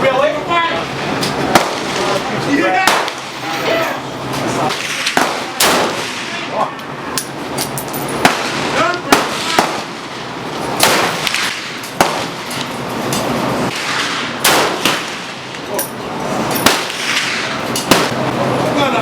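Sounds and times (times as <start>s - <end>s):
people talking: 0.0s - 1.0s, 1.8s - 7.2s, 8.6s - 9.3s, 18.2s - 19.0s
gunshots: 1.5s - 2.2s, 2.8s - 3.4s, 4.7s - 6.5s, 8.2s - 10.2s, 10.8s - 12.5s, 13.7s - 15.6s, 16.6s - 18.2s.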